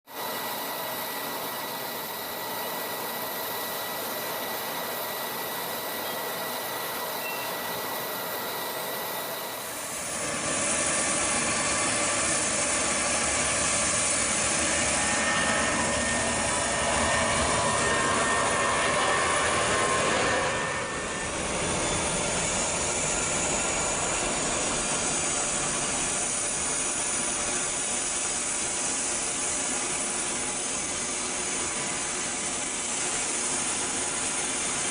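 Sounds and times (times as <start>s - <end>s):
jet engines roaring: 0.2s - 34.9s.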